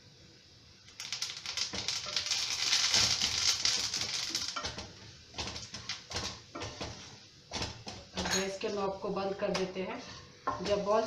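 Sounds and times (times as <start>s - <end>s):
leaves crackling in hot oil: 0.7s - 11.0s.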